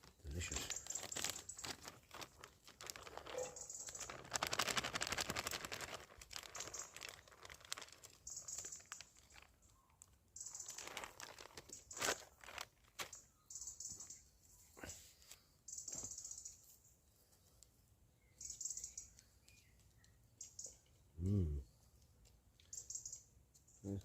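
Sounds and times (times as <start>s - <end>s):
plastic packet crinkling: 0.0s - 13.2s.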